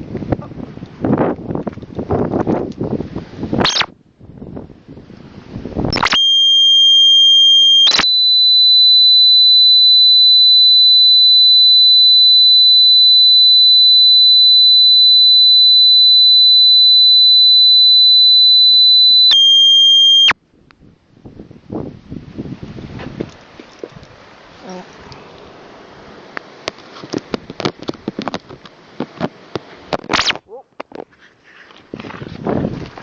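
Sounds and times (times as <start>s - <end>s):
electronic tone: 3.6s - 3.9s, 5.9s - 20.4s, 30.1s - 30.4s.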